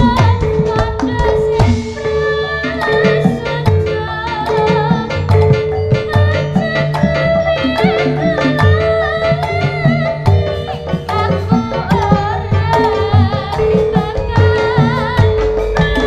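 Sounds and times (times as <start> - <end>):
hand drums playing: 0.0 - 16.0
steady held tone: 0.0 - 16.0
wavering high melody: 0.0 - 16.0.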